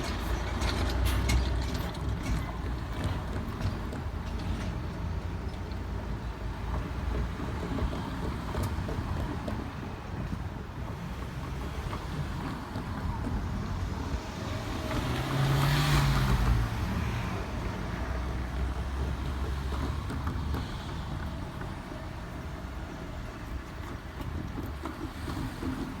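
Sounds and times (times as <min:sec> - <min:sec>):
vehicle passing by: 0:13.9 - 0:21.4.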